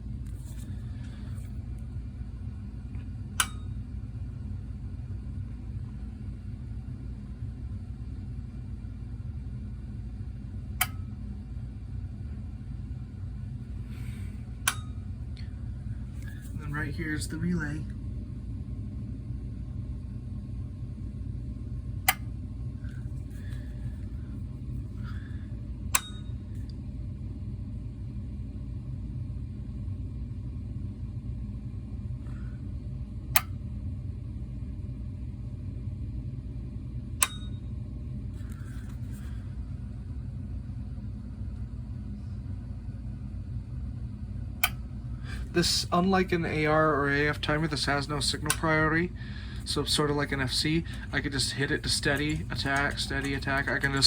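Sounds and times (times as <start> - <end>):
steady low rumble: 0.0 - 54.0
relay clicking: 49.6 - 54.0.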